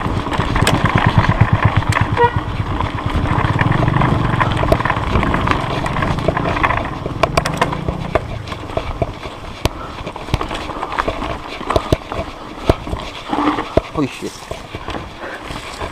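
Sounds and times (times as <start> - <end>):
bike clicks and knocks: 0.0 - 15.9.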